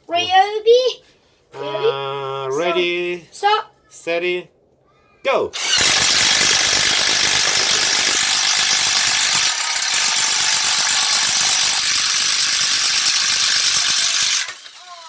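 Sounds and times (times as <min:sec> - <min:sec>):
impact driver rattling: 0:05.6 - 0:14.9.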